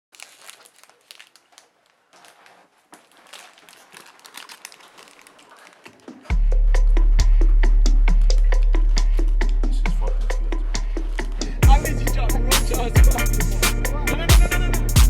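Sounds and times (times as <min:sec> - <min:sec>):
crinkling and rustling: 0:00.0 - 0:06.4
loud bass-heavy music: 0:06.3 - 0:15.0.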